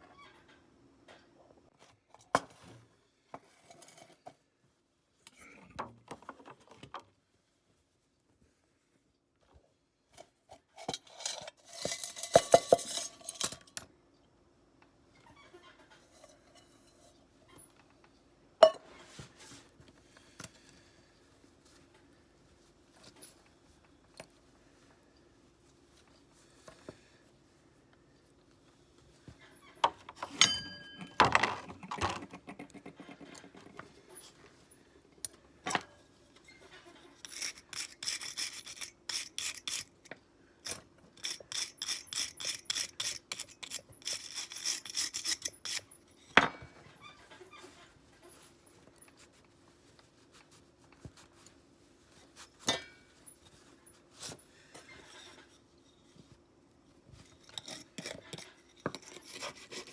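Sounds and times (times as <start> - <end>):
abrasive rubbing strokes on metal: 37.2 - 40.1, 40.7 - 45.9.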